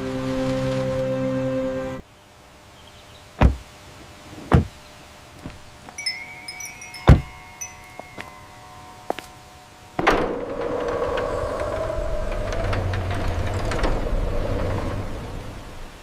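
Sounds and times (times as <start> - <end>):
heavy thuds: 3.4 - 3.7, 4.4 - 4.8, 7.0 - 8.4
high tinkling notes: 6.0 - 10.5.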